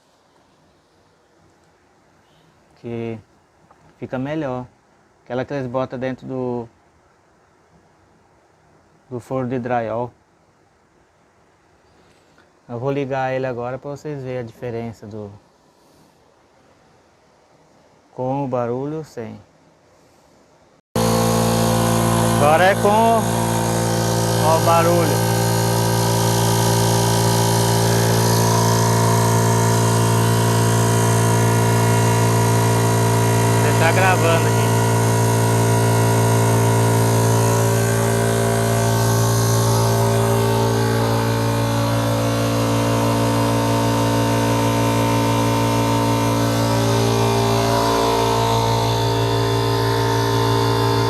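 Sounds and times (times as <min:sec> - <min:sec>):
air compressor humming: 0:21.0 - 0:51.0.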